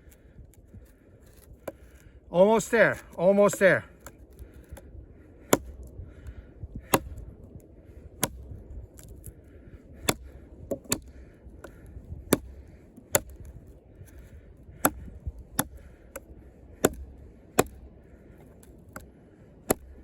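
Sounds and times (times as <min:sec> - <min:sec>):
knife blade chopping into log: 0:05.4 - 0:05.8, 0:06.8 - 0:07.2, 0:08.2 - 0:09.3, 0:10.0 - 0:13.5, 0:14.1 - 0:16.2, 0:16.8 - 0:17.9, 0:18.6 - 0:20.0.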